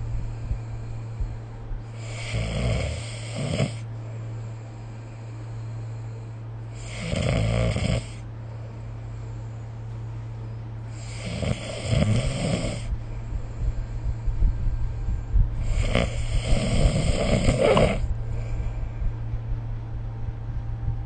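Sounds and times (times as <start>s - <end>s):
steady low hum: 0.0s - 21.0s
person snoring: 1.9s - 3.9s, 6.7s - 8.2s, 10.9s - 12.9s, 15.6s - 18.5s.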